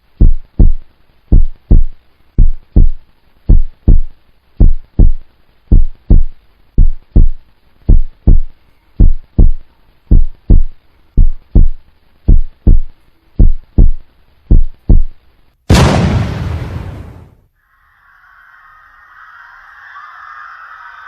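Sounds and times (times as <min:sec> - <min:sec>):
heartbeat thumps: 0:00.2 - 0:16.0.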